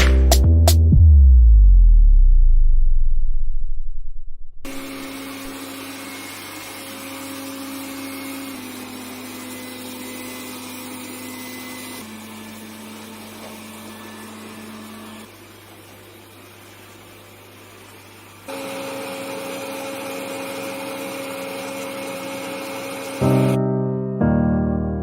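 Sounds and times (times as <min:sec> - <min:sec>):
robot vacuum whirring and humming: 0:04.7 - 0:15.5, 0:18.5 - 0:23.6.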